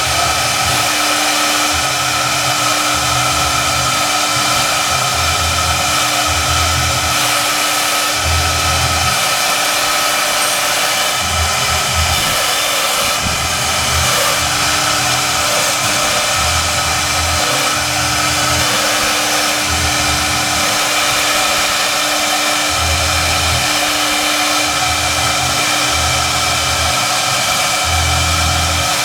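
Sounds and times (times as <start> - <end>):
router spindle whine: 0.0 - 29.0
low pulsing hum: 13.2 - 28.9.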